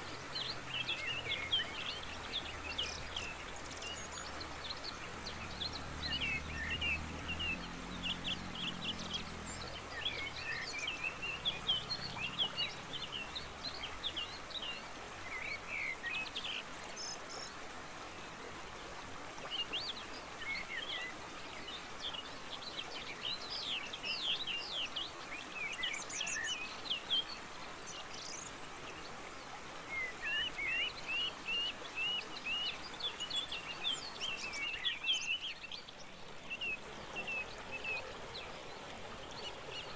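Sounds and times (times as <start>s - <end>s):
waterfall rushing: 0.0s - 17.2s
songbirds chirping and whistling: 0.0s - 17.5s, 29.9s - 39.9s.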